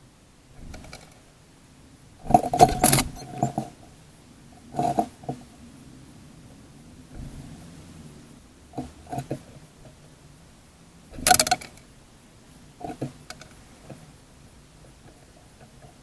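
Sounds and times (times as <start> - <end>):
birds scuffling: 0.0 - 5.7.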